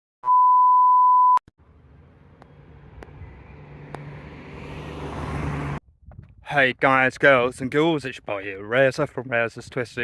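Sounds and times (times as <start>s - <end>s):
electronic beep: 0.2s - 1.4s
outdoor background noise: 1.6s - 10.0s.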